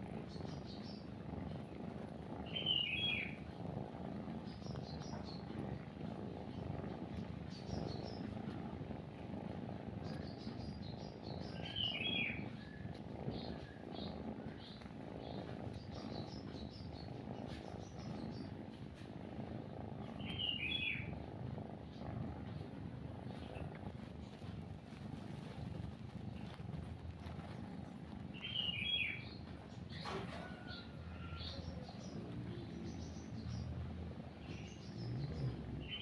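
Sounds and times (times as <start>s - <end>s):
cat purring: 0.0s - 36.0s
bird calling: 2.4s - 3.4s, 11.4s - 12.8s, 20.2s - 21.1s, 28.3s - 29.4s
high bird chirps: 20.2s - 21.1s, 28.4s - 29.3s.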